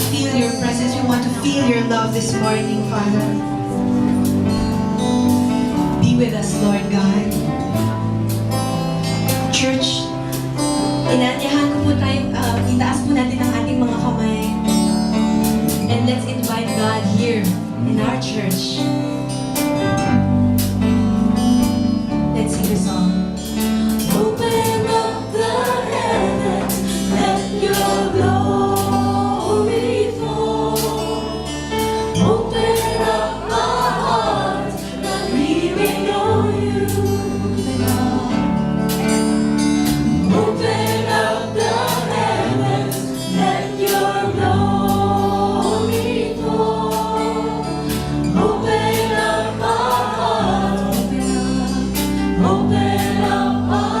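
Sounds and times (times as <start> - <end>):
sustained bass notes: 0.0 - 54.0
voices singing in chorus: 24.0 - 38.8, 40.2 - 54.0
drum and cymbal hits: 37.8 - 45.2, 47.8 - 49.2.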